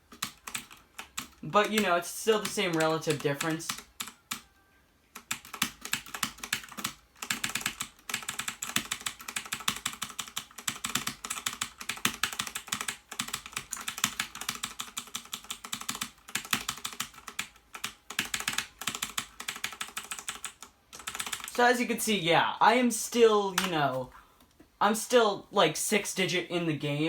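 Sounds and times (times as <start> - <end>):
clicky keyboard typing: 0.1 - 4.5, 5.2 - 21.6, 23.6 - 23.9.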